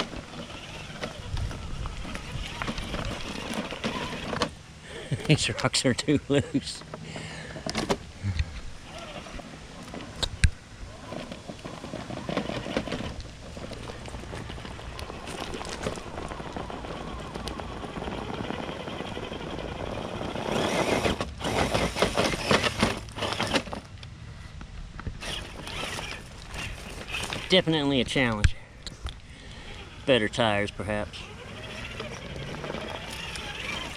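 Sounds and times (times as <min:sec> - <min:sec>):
rocks crunching and clattering: 0:00.0 - 0:04.6, 0:09.8 - 0:24.1, 0:24.9 - 0:28.6, 0:31.8 - 0:33.9
rc car tires slipping: 0:00.0 - 0:33.9.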